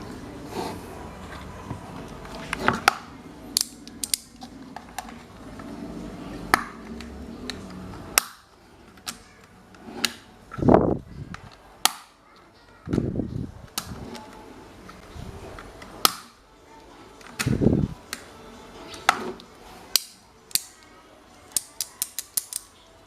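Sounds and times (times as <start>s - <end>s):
tools and metal parts clicking: 21.5s - 23.0s.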